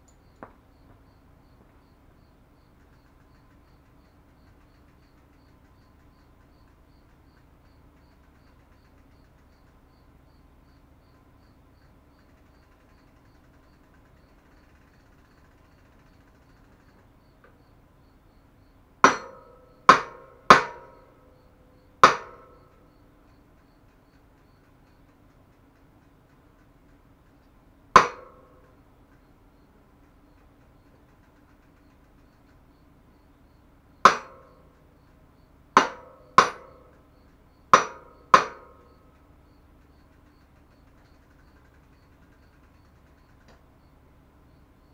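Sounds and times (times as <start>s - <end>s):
hammer blows on metal: 19.0s - 21.3s, 22.0s - 22.8s, 28.0s - 28.7s, 34.0s - 34.8s, 35.8s - 37.0s, 37.6s - 39.1s.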